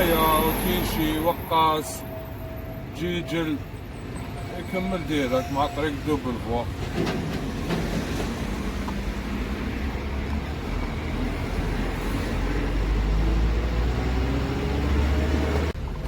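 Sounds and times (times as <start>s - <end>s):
road noise: 0.0s - 16.0s
truck engine accelerating: 6.8s - 16.0s.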